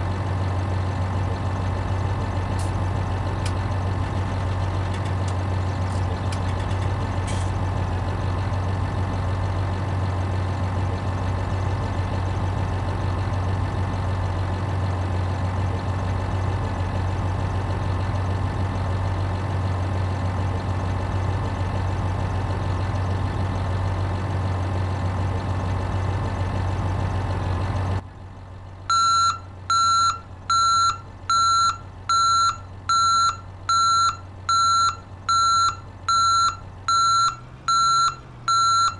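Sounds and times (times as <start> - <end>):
reversing alarm beeping: 28.9 - 38.9.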